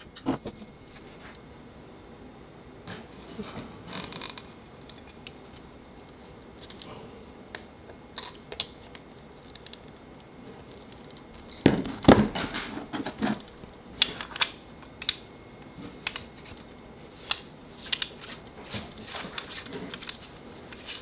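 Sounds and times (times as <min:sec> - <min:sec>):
small hard parts clicking: 0:03.1 - 0:05.4.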